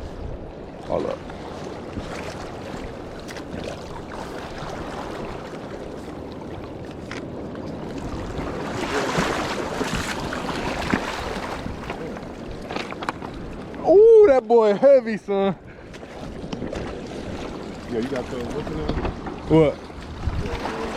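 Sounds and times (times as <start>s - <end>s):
wind on microphone: 0.0s - 14.3s, 15.6s - 20.9s
river water rushing: 8.0s - 13.1s.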